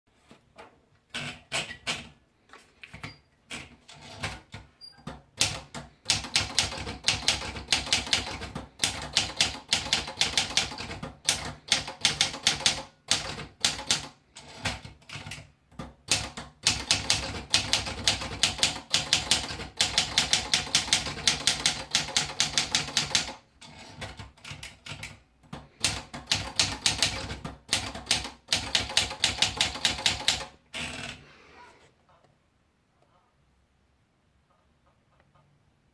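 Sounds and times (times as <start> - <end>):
manual typewriter typing: 3.5 - 31.0.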